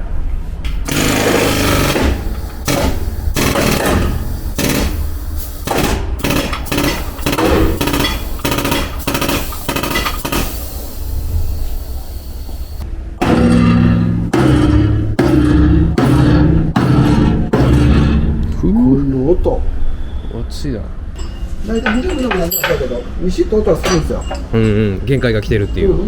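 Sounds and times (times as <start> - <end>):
hammer striking steel panel: 0.7 - 10.7, 13.2 - 18.5.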